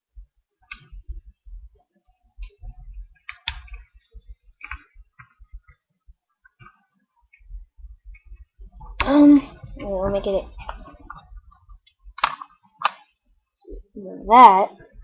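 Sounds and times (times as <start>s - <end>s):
dull low thuds: 0.9s - 1.8s, 2.4s - 6.2s, 7.4s - 12.2s.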